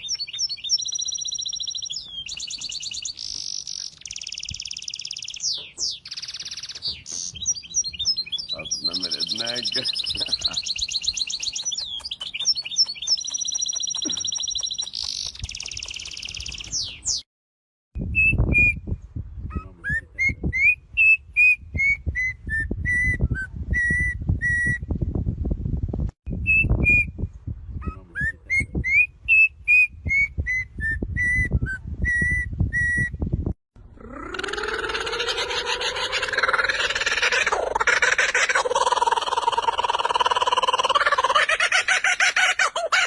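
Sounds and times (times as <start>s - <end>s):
birds twittering and trilling: 0.0s - 17.3s, 34.0s - 43.0s.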